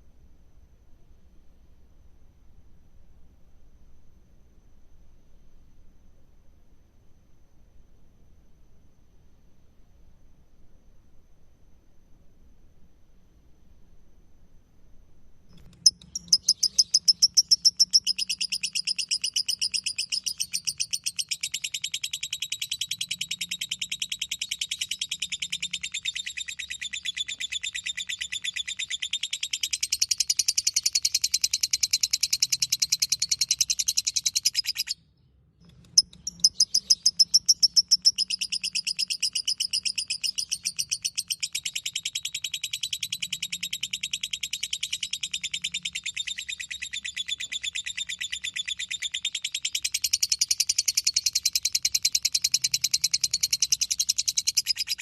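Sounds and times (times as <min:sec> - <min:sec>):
lovebird chattering: 0:15.7 - 0:35.0, 0:35.7 - 0:55.0.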